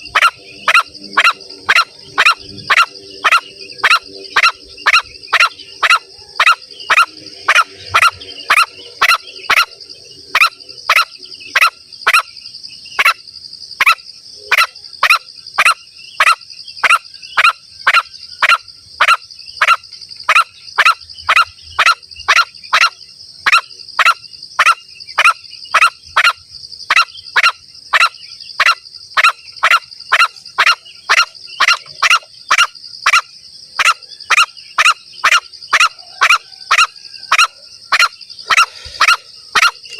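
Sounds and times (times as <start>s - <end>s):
short sharp bird calls: 13.8s - 39.9s.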